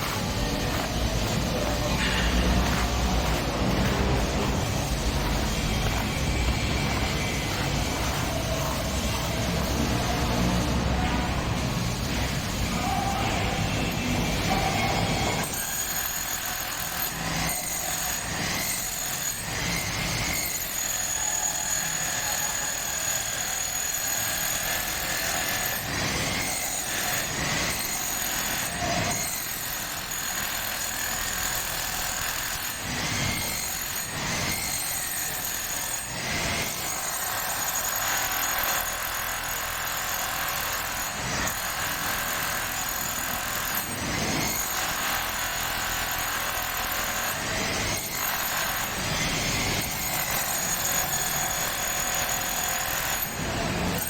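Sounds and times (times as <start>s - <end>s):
power drill drilling into floor: 15.4s - 53.3s.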